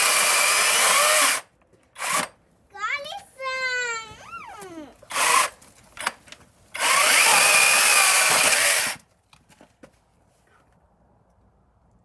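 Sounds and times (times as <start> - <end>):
chainsaw running at full speed: 0.0 - 1.4, 5.1 - 5.5, 6.8 - 9.0.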